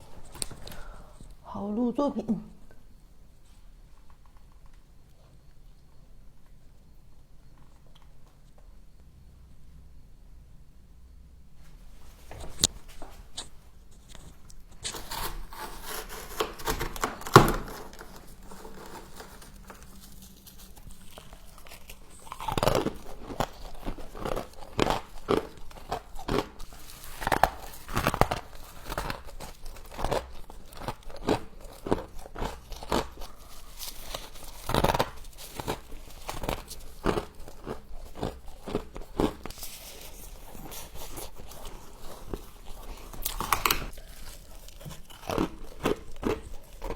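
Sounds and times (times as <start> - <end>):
crunching and chewing of frost: 0.0 - 1.4, 11.7 - 46.9.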